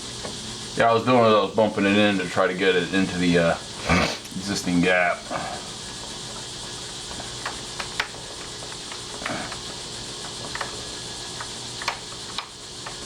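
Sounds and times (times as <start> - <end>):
steady hiss: 0.0 - 13.0.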